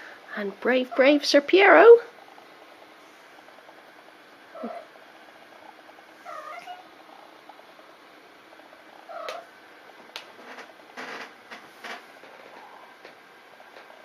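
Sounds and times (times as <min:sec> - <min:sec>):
cat calling: 0:04.5 - 0:04.9, 0:06.2 - 0:06.9.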